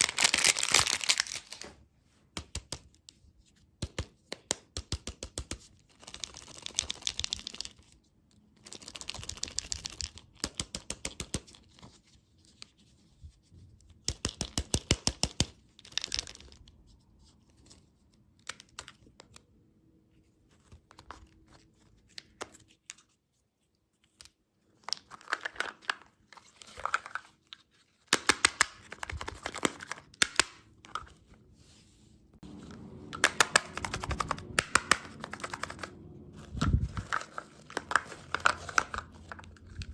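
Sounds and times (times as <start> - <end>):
candy wrapper crinkling and tearing: 0.0 - 1.8, 5.9 - 7.9, 15.4 - 16.9, 32.6 - 39.9.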